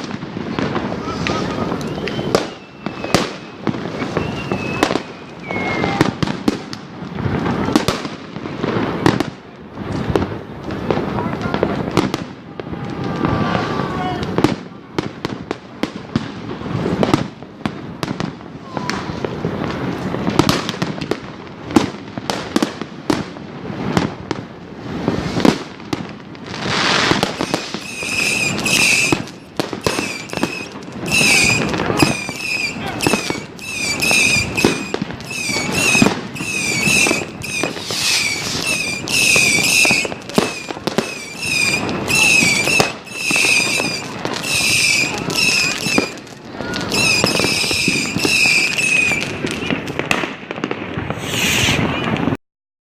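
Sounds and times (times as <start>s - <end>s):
fireworks bangs and crackles: 0.0s - 52.4s
short high whistling tones: 1.8s - 6.0s, 27.3s - 46.1s, 46.9s - 49.3s, 51.2s - 52.2s
rocket hissing: 26.6s - 49.6s, 51.0s - 52.1s.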